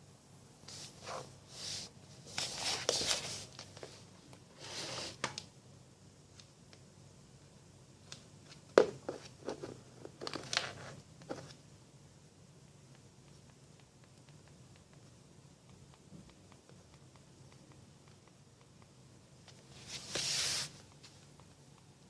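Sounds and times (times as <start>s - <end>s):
rustling and scraping: 0.7s - 5.4s, 19.5s - 21.3s.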